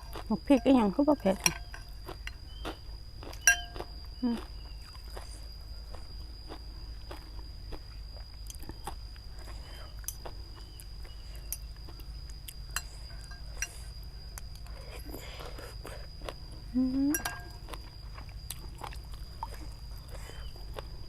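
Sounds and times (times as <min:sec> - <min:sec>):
person chewing: 0:00.0 - 0:00.3, 0:01.4 - 0:21.0
utensils clinking against a bowl: 0:00.0 - 0:02.5, 0:03.3 - 0:03.8, 0:12.8 - 0:13.9, 0:17.1 - 0:17.6.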